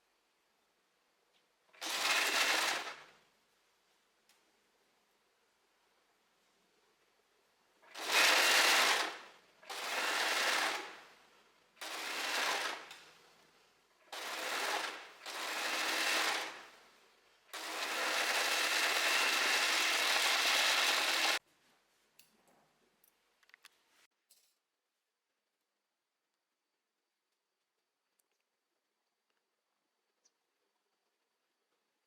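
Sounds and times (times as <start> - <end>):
overlocker stitching fabric: 1.8 - 3.1, 7.8 - 11.0, 11.8 - 13.3, 14.0 - 16.8, 17.6 - 21.4.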